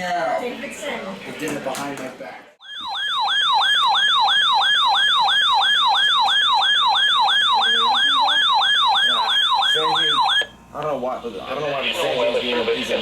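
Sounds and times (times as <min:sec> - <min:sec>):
electronic alert siren sweeping: 0:02.6 - 0:10.5.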